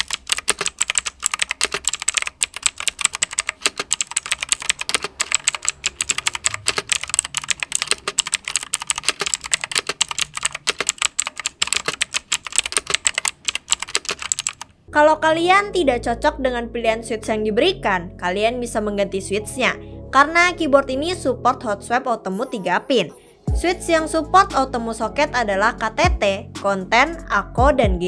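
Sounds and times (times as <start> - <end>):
mechanical keyboard typing: 0.0 - 14.7.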